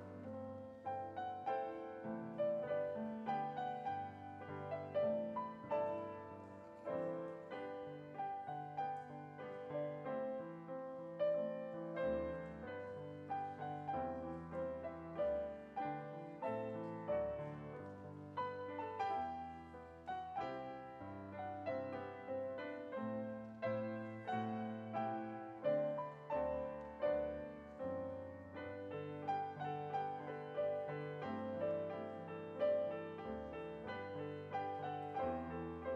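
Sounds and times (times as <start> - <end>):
slow gentle piano piece: 0.0 - 35.9.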